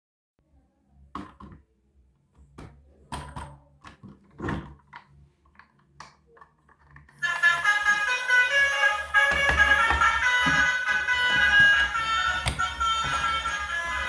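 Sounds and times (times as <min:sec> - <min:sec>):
scraping: 0:07.4 - 0:14.0
toys knocking and tapping: 0:09.1 - 0:14.0.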